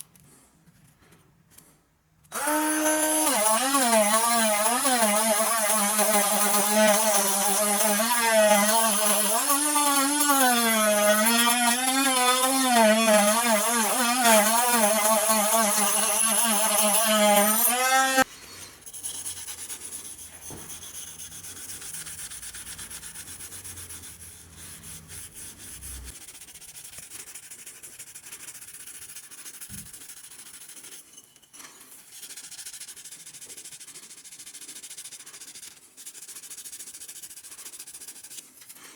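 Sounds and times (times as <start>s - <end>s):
small power tool running: 2.3s - 18.3s
rubbing and scraping: 2.4s - 38.9s.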